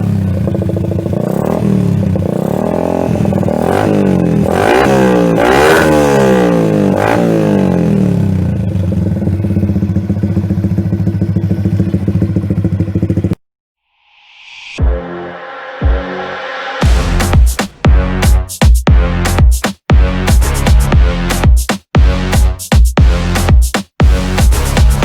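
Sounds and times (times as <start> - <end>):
motorcycle engine revving and idling: 0.0 - 13.4, 19.3 - 25.0.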